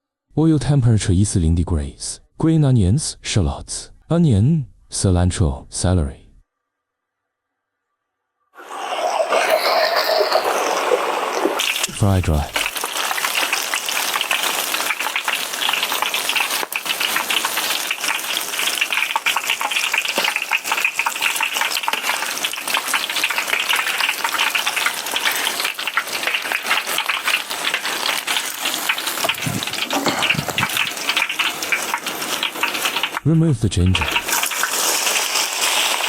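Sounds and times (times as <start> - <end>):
vegetables sizzling in hot oil: 8.6 - 33.3, 33.9 - 36.0.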